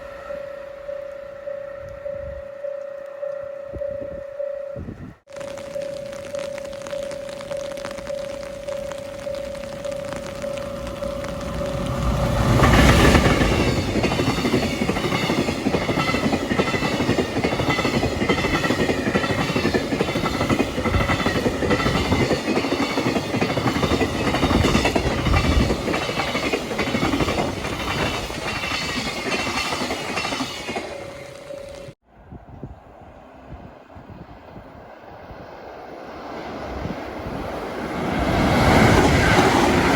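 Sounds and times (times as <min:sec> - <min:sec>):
train wheels clattering over rail joints: 0:11.2 - 0:31.9.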